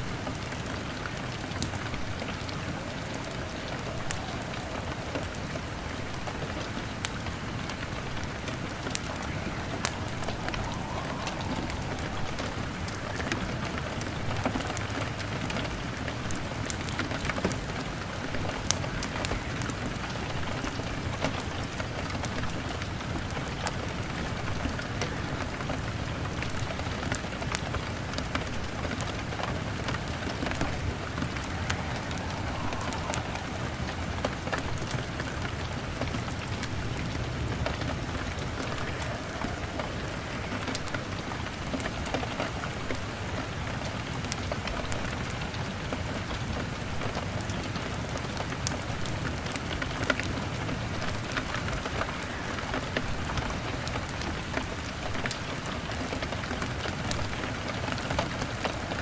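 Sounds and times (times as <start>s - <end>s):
log fire crackling: 0.0s - 45.4s
rain on a window pane: 0.0s - 59.0s
low rumble: 2.0s - 14.6s, 29.6s - 42.0s.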